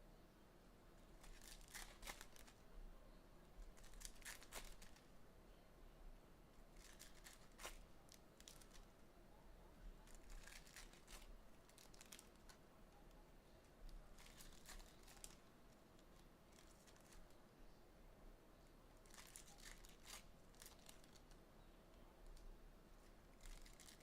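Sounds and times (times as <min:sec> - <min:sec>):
wrapping crinkling and tearing: 0:01.1 - 0:02.6, 0:03.6 - 0:05.1, 0:06.7 - 0:08.9, 0:10.0 - 0:17.4, 0:19.0 - 0:21.4, 0:23.3 - 0:24.0.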